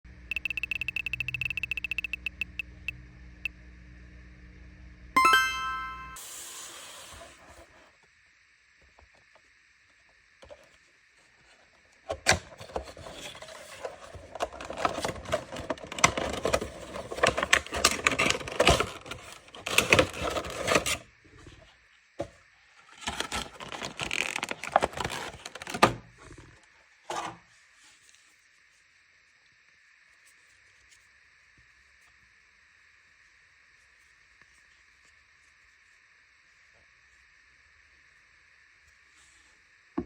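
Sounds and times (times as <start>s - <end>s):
cardboard and plastic rustling: 12.6s - 21.0s, 22.9s - 26.2s.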